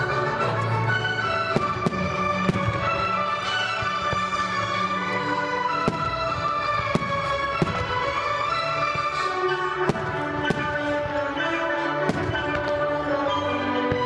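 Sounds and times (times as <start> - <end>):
music with sustained tones: 0.0 - 14.0
firework bangs: 1.4 - 4.4, 5.7 - 11.4, 12.0 - 13.1.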